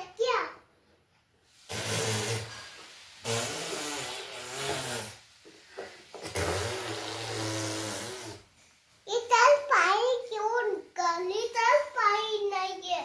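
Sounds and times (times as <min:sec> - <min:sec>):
toy car motor buzzing: 0:06.3 - 0:08.5.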